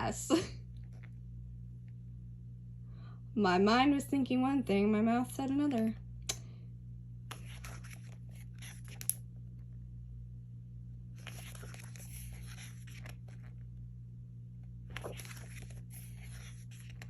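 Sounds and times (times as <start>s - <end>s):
steady low hum: 0.0s - 17.0s
pages rustling: 7.3s - 9.2s, 11.1s - 13.7s, 14.9s - 17.0s.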